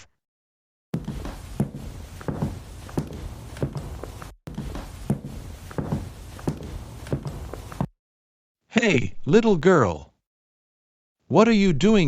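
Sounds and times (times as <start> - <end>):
footsteps walking: 1.0 - 7.9.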